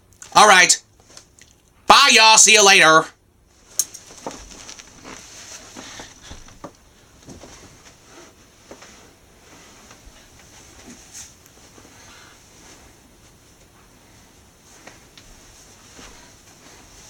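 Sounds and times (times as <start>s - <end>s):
soft handling taps and rustles: 3.6s - 12.0s.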